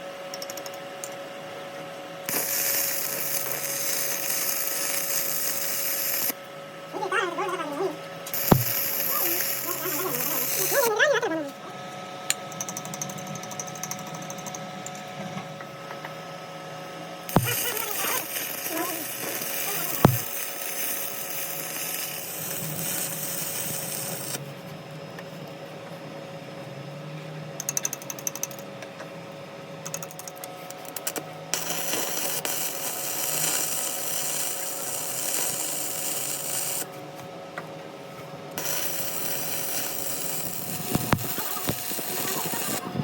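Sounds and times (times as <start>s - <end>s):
power tool running: 2.3s - 6.4s, 8.3s - 10.9s, 17.3s - 24.4s, 38.6s - 43.0s.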